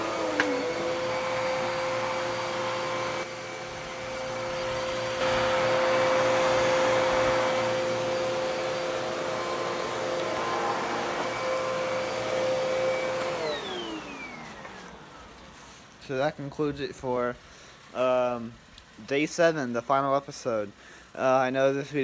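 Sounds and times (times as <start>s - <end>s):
vacuum cleaner running on carpet: 0.0s - 16.2s.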